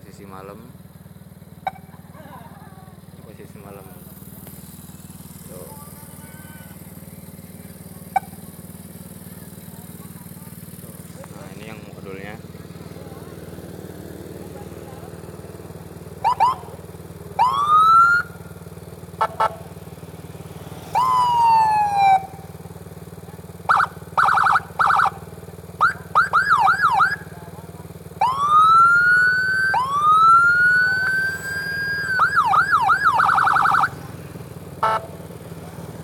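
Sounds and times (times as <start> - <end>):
electronic siren: 8.1 - 8.4, 16.2 - 16.8, 17.4 - 18.5, 19.2 - 19.6, 21.0 - 22.4, 23.7 - 25.2, 25.8 - 27.3, 28.2 - 34.0, 34.8 - 35.1.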